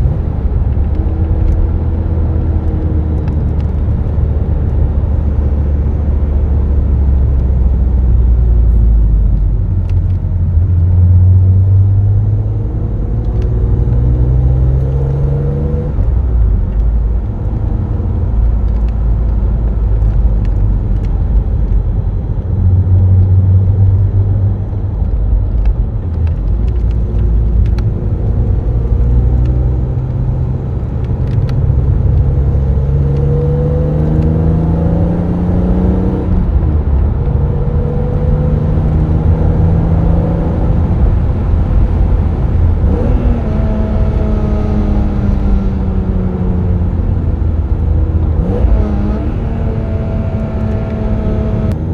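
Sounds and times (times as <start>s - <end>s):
car engine revving: 9.3s - 16.4s, 26.2s - 51.9s.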